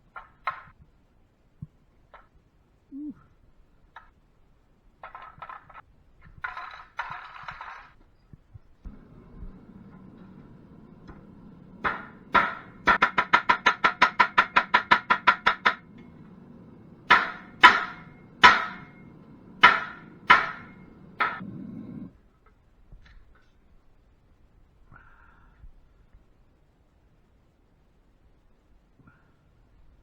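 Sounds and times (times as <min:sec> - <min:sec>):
faint low rumble: 0:08.2 - 0:12.9, 0:15.7 - 0:23.0
hammer blows on metal: 0:08.9 - 0:22.1.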